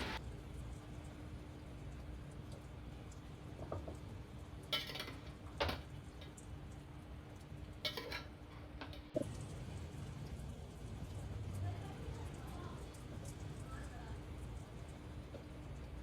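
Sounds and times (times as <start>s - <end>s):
low steady hum: 0.0s - 16.0s
kitchenware clinking and knocking: 7.9s - 9.1s.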